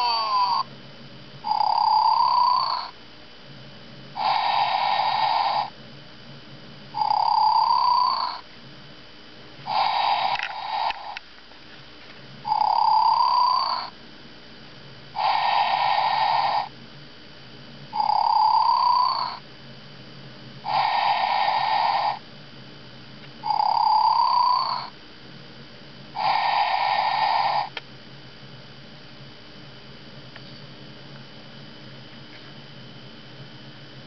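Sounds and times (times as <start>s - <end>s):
toy snoring sound: 0.0s - 0.7s, 1.5s - 3.0s, 4.2s - 5.7s, 7.0s - 8.4s, 9.7s - 11.2s, 12.5s - 14.0s, 15.2s - 16.7s, 18.0s - 19.4s, 20.6s - 22.2s, 23.4s - 24.9s, 26.2s - 27.8s.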